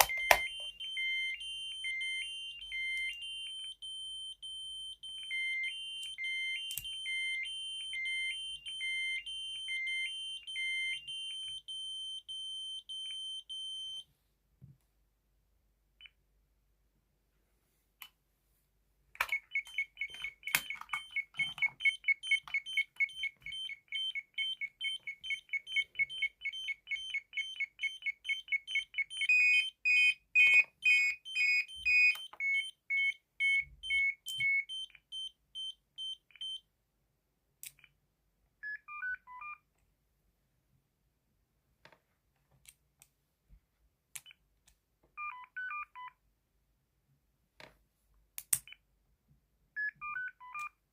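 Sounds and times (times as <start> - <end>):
clicks: 0.0 - 0.9, 19.2 - 23.7, 37.6 - 38.0
fast alternating two-pitch alarm beep: 0.0 - 14.0, 19.4 - 36.6
keypad confirmation beeps: 0.0 - 14.0, 19.3 - 36.6
slower low-pitched alarm beep: 0.0 - 14.1, 19.4 - 36.6.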